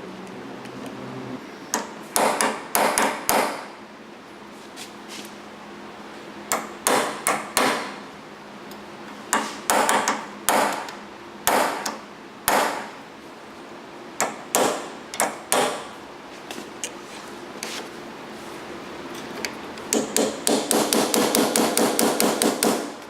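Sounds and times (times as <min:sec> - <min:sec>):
hammer tapping metal punch: 0:01.7 - 0:03.7, 0:09.3 - 0:12.9, 0:14.2 - 0:15.9, 0:19.9 - 0:23.0.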